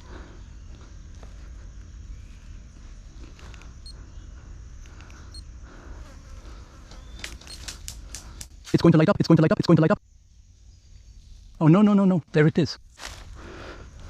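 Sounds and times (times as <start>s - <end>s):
faint clicks: 3.2s - 4.0s, 4.8s - 5.4s, 6.9s - 8.6s.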